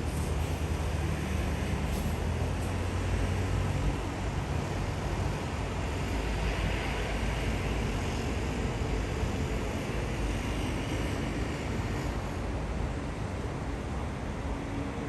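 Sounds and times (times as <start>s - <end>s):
distant road traffic rumble: 0.0s - 8.2s.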